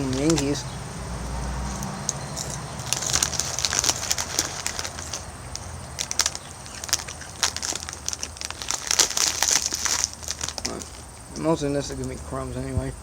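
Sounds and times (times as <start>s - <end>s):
chip bag crinkling: 0.0s - 0.7s, 1.6s - 12.0s.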